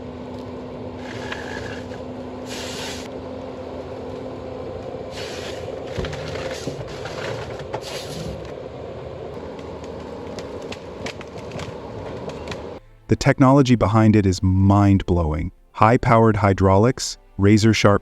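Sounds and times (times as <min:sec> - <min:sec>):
harvester machine humming: 0:00.0 - 0:12.8
short hissy bursts: 0:02.4 - 0:03.1.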